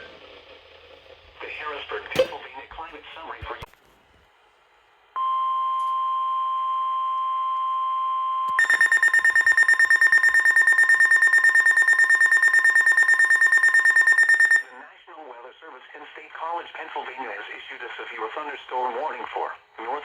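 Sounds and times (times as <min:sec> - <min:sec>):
rapidly pulsing alert beeping: 0:08.6 - 0:14.7
steady warning alarm tone: 0:08.6 - 0:14.7.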